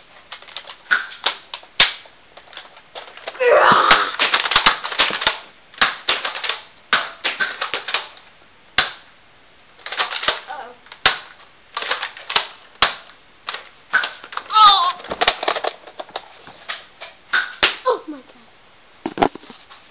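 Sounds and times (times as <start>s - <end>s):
toy blaster plastic clicks and snaps: 0.3s - 6.6s.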